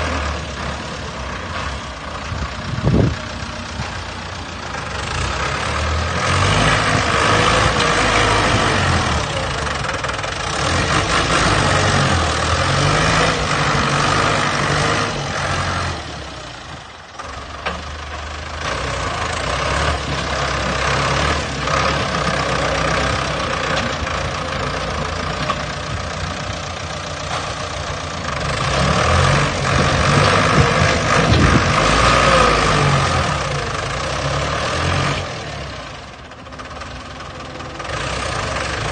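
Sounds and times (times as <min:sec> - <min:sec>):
heavy machine engine revving: 0:00.0 - 0:38.9.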